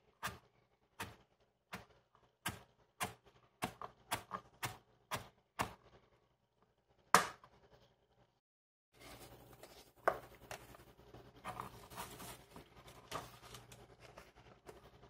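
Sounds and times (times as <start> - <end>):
knife chopping on cutting board: 2.5 - 5.8.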